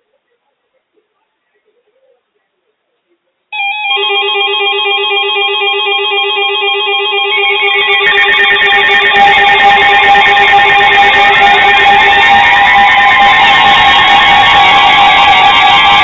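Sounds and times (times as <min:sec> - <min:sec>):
electronic alarm beeping and warbling: 0:03.6 - 0:16.0.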